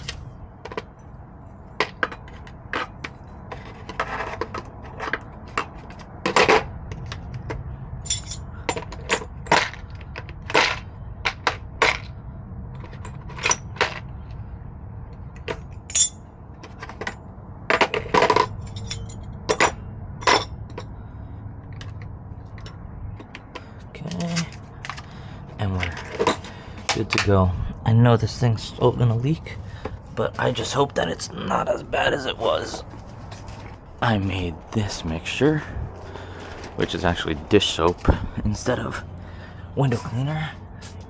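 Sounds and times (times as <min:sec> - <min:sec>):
metallic clinks and knocks: 0:08.0 - 0:12.0, 0:12.8 - 0:14.0, 0:15.4 - 0:20.9, 0:25.9 - 0:27.3.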